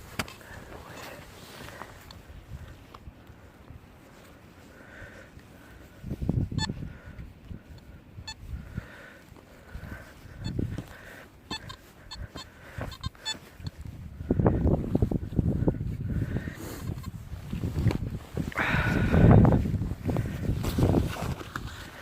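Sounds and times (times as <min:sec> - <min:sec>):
metal detector beeping: 0:06.5 - 0:06.8, 0:07.7 - 0:08.5, 0:10.2 - 0:13.8.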